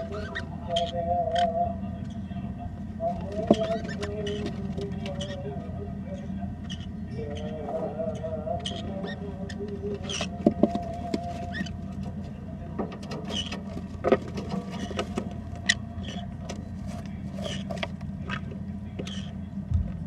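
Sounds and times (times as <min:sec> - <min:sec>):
birds clicking and scratching: 0:00.0 - 0:19.5
steady low hum: 0:00.0 - 0:20.0
soft bird chirps: 0:03.6 - 0:12.0, 0:17.1 - 0:19.5.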